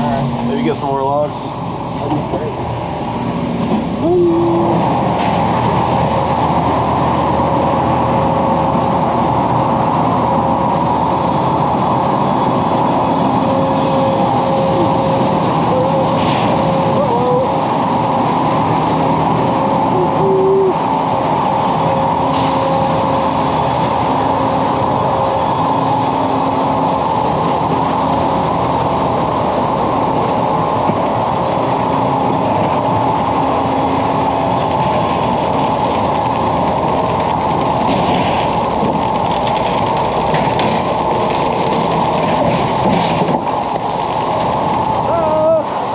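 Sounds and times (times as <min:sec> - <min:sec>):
sawmill machinery running: 0:00.0 - 0:45.9.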